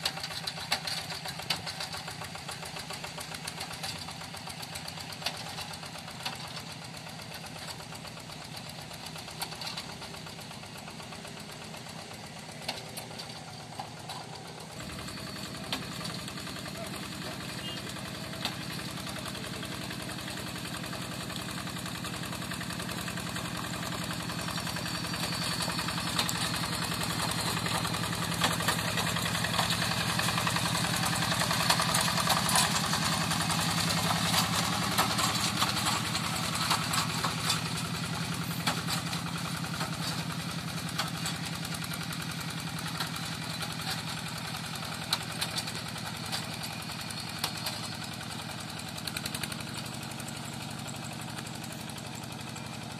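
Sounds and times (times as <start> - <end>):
diesel engine running: 0.0 - 52.9.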